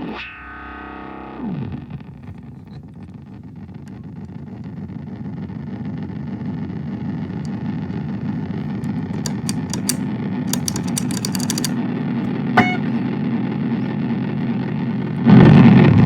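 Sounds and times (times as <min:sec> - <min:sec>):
sharp clicks: 0:08.8 - 0:11.8.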